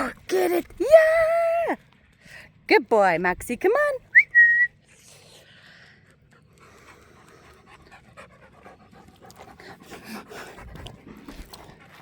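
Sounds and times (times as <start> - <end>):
dog panting: 6.0 - 12.0.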